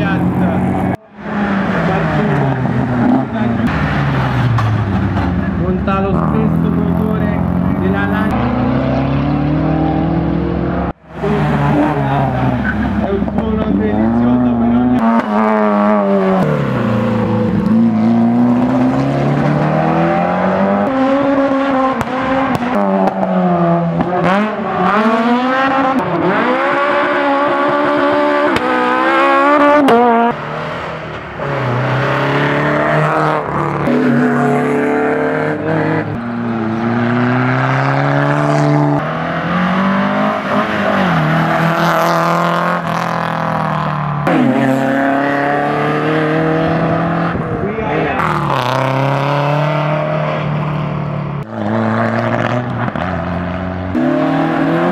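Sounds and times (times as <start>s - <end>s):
race car engines revving: 0.0s - 54.9s.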